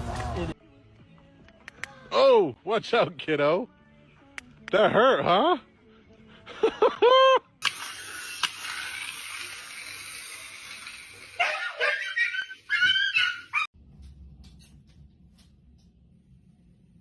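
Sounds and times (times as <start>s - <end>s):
dog yelping and whining: 11.4s - 13.7s.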